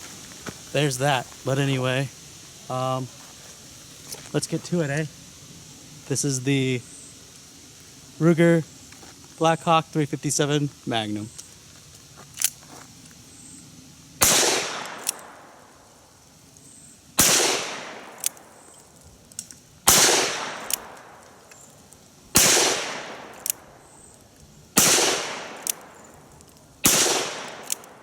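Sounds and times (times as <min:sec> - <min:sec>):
small sharp click: 0:25.6 - 0:26.6.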